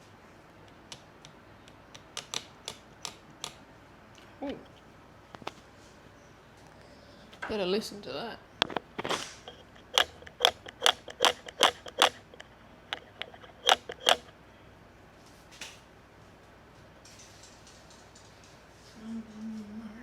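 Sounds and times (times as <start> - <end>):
sharp mechanical clicks: 8.6 - 14.3.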